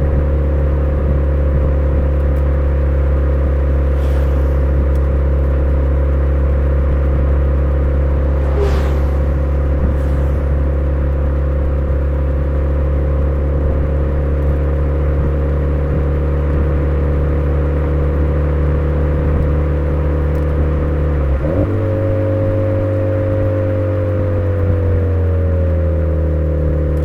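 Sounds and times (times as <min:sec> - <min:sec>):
car exhaust while driving: 0:00.0 - 0:26.1.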